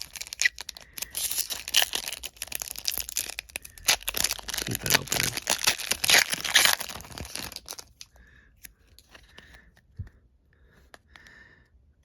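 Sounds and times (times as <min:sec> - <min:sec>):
foil wrapper ripping and crinkling: 0:00.0 - 0:08.1.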